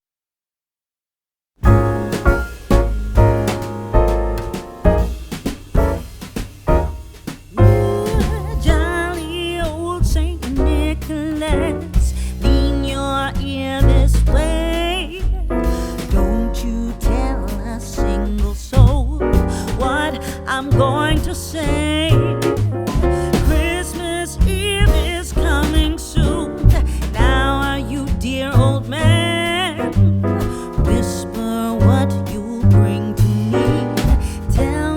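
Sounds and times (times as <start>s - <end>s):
bass line: 1.6s - 34.9s
piano chords: 1.6s - 34.9s
person singing: 7.6s - 22.6s, 23.3s - 29.9s.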